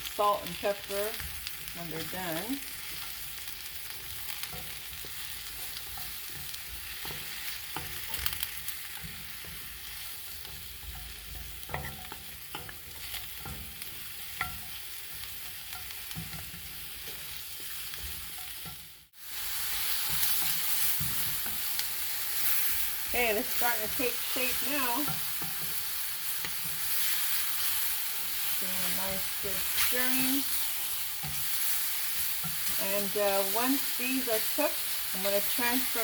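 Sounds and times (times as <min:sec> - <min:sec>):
mushrooms and onions sizzling in pan: 0:00.0 - 0:36.0
utensil stirring clicks and scrapes: 0:01.2 - 0:18.8.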